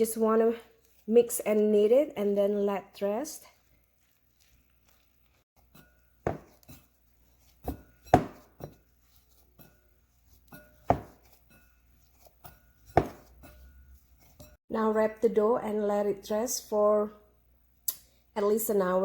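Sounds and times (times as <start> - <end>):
dough knocking on work surface: 6.2 - 6.6, 7.6 - 8.7, 10.9 - 11.3, 12.9 - 13.4.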